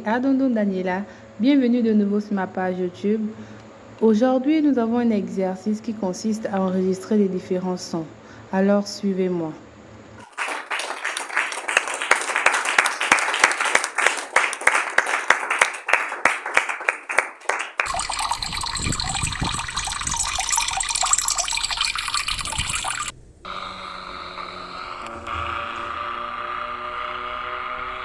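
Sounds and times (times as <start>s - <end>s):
steady hum with held tones: 0.0s - 15.6s, 17.8s - 28.0s
water pouring: 17.8s - 23.1s.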